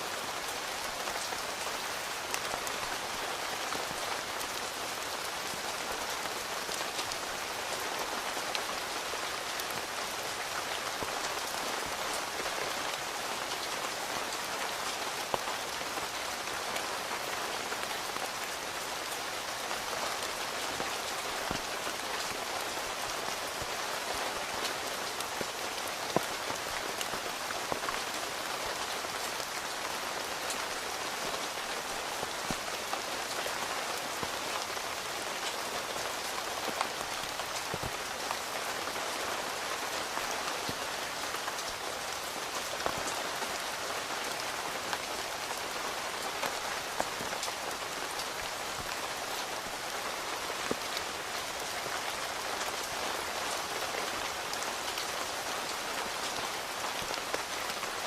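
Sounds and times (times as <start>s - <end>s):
rain falling on a tent: 0.0s - 58.0s.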